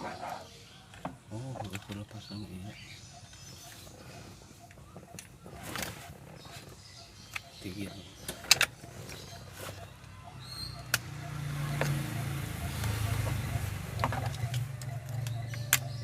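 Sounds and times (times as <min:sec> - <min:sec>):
vehicle engine hum: 0:00.0 - 0:16.0
sharp clicks: 0:10.8 - 0:12.0, 0:13.9 - 0:16.0.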